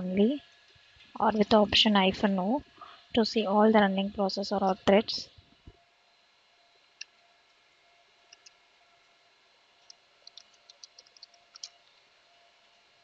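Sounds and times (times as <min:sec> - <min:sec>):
keyboard keys clicking: 0:10.2 - 0:11.8.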